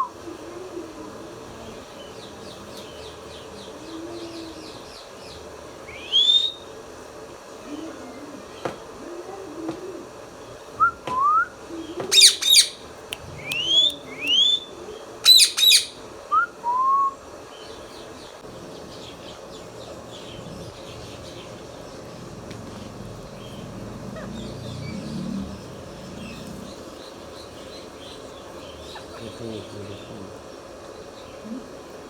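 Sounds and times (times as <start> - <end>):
parakeet rising whistles: 5.9 - 6.7, 12.1 - 12.8, 13.4 - 14.7, 15.3 - 17.2
parakeet screeching: 12.1 - 12.8, 15.2 - 16.0.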